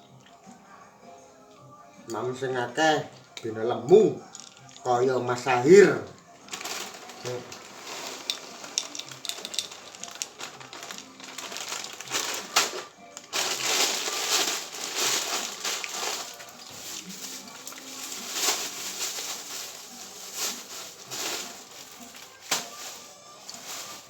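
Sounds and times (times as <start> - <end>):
quiet background music: 0.0 - 24.0
crinkling and crunching: 6.4 - 24.0.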